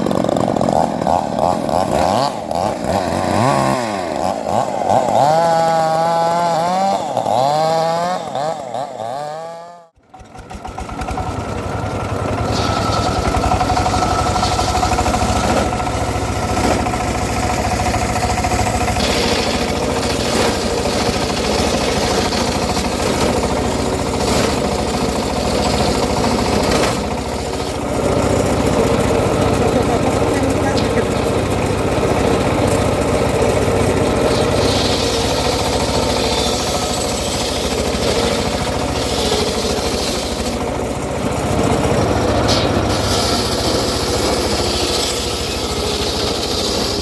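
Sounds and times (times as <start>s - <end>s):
chainsaw engine revving: 0.0s - 47.0s
steady engine drone: 10.4s - 47.0s.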